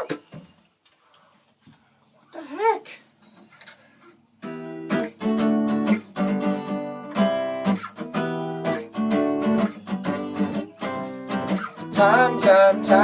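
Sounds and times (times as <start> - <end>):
acoustic guitar strumming: 4.4 - 13.0.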